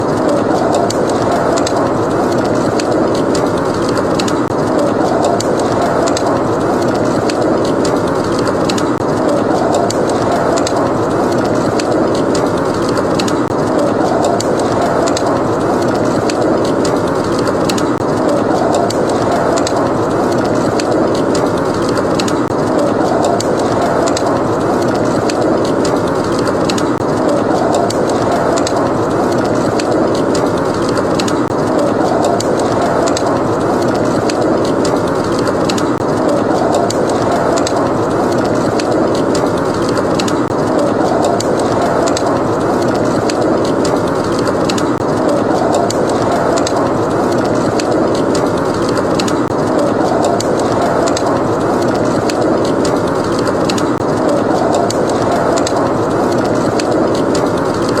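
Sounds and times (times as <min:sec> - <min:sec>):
blizzard wind blowing: 0:00.0 - 0:58.0
wood fire crackling: 0:00.0 - 0:58.0.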